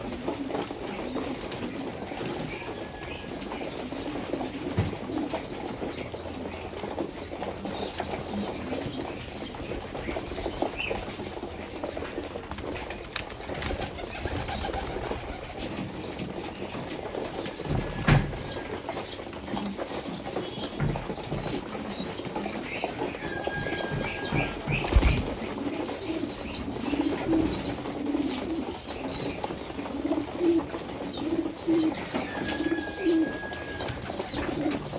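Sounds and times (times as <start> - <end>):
birds chirping: 0.0 - 34.9
loud knocks: 17.7 - 18.6.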